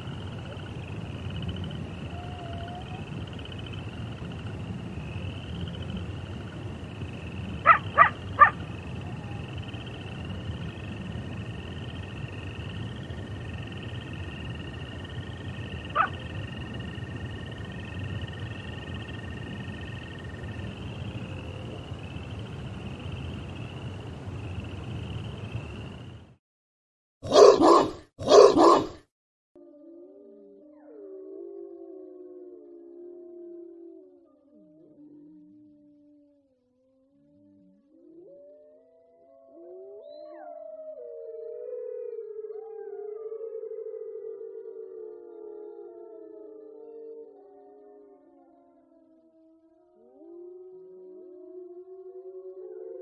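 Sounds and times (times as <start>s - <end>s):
wolves yipping: 7.6s - 9.5s, 15.9s - 16.2s, 27.3s - 29.0s
wolves barking: 7.6s - 9.6s, 15.8s - 16.4s, 27.2s - 29.0s
wolves howling together: 7.6s - 9.6s, 15.8s - 16.3s, 29.6s - 36.3s, 37.9s - 53.0s.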